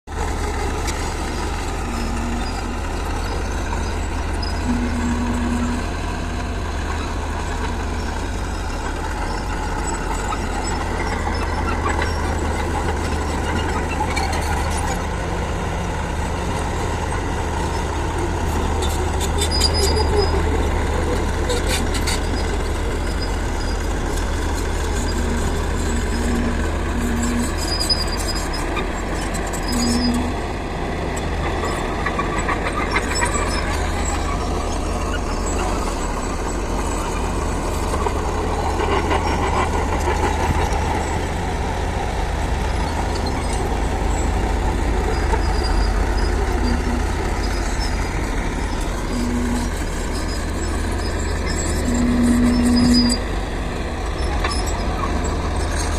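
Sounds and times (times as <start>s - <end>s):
diesel engine rumbling: 0.0s - 55.9s
short low beeps: 4.4s - 6.0s, 25.1s - 27.6s, 29.7s - 30.4s, 46.5s - 47.8s, 49.1s - 49.8s, 51.7s - 53.2s.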